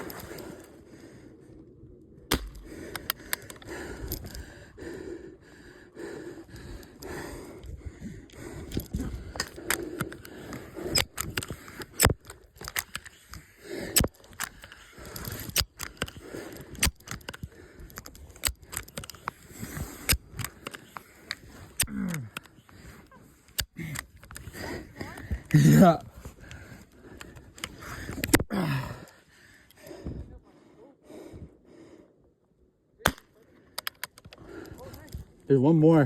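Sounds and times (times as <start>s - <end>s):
handling noise clicks and scraping: 0.0s - 0.8s, 2.3s - 4.5s, 6.4s - 28.5s, 33.0s - 35.6s.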